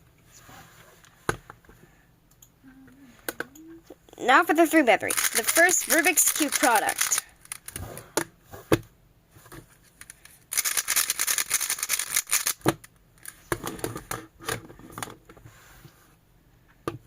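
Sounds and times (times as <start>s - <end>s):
puzzle cube turning clicks: 5.1s - 7.8s, 10.0s - 13.4s.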